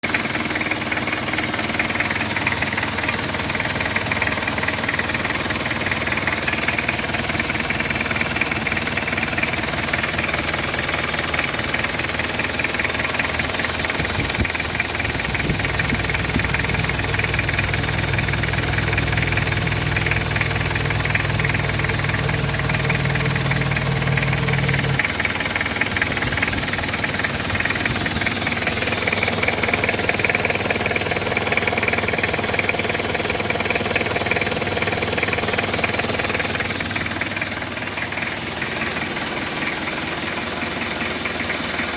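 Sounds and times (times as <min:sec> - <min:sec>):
diesel engine clattering: 0:00.0 - 0:41.9
deep hum: 0:14.1 - 0:32.2.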